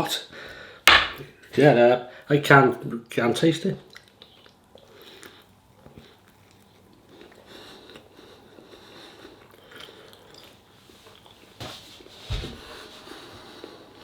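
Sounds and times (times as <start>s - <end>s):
person chewing food: 3.9s - 11.5s.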